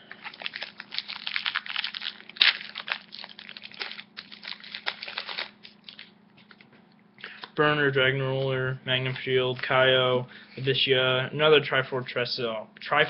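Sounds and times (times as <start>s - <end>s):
foil wrapper crinkling and tearing: 0.0s - 6.6s.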